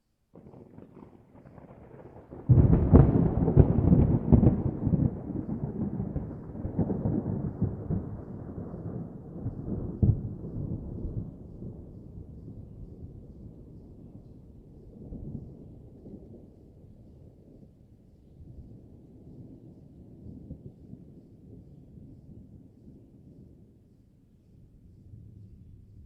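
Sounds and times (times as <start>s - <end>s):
distant thunder rolling: 0.4s - 17.0s.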